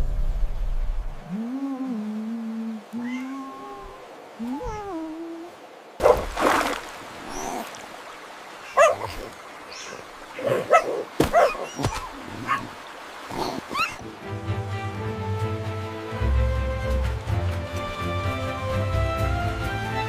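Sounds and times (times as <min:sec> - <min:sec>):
animal yelps and whimpering: 0:03.0 - 0:05.1, 0:07.3 - 0:07.7, 0:08.7 - 0:14.0.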